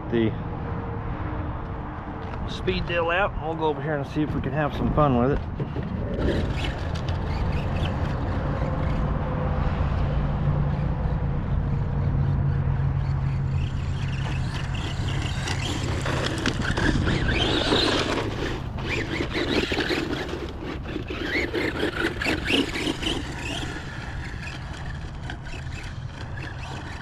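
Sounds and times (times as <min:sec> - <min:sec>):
rc car motor whine: 0:05.6 - 0:27.0
tyres crunching on gravel: 0:13.3 - 0:27.0.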